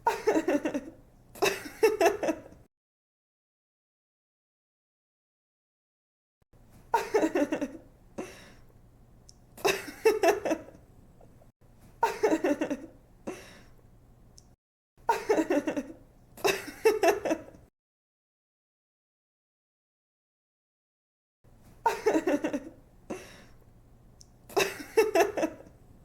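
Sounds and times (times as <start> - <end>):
woman giggling: 0.0 - 2.6, 6.9 - 7.8, 9.6 - 10.8, 12.0 - 13.5, 15.1 - 17.6, 21.9 - 23.2, 24.5 - 25.7.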